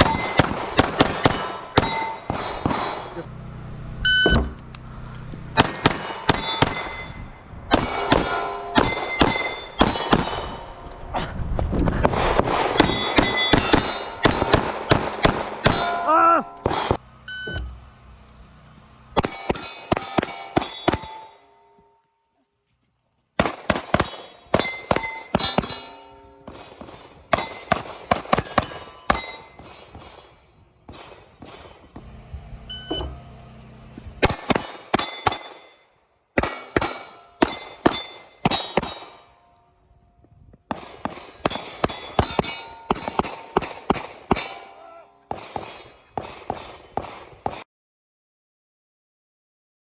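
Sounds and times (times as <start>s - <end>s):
rapid pistol shots: 0.0s - 3.2s, 5.6s - 7.1s, 7.7s - 10.8s, 12.0s - 16.0s, 19.2s - 21.3s, 23.4s - 32.1s, 34.2s - 35.7s, 36.4s - 39.2s, 40.7s - 44.7s, 45.3s - 47.6s
steel targets ringing: 0.0s - 3.3s, 5.6s - 10.9s, 12.8s - 18.0s, 19.0s - 22.0s, 23.4s - 39.7s, 40.8s - 46.6s.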